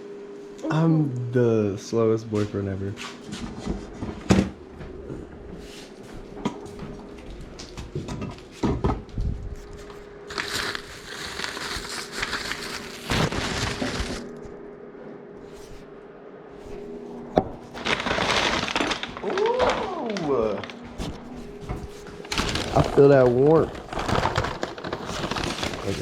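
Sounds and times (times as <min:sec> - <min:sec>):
faint steady hum: 0:00.0 - 0:03.0
crinkling and crackling: 0:09.1 - 0:14.6, 0:16.6 - 0:26.0.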